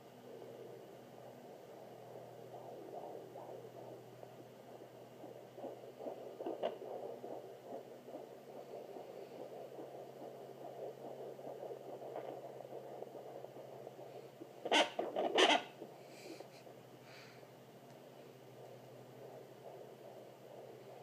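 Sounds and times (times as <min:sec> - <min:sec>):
fetal heartbeat pulses: 0:00.0 - 0:21.0
doppler low hum: 0:00.2 - 0:14.0.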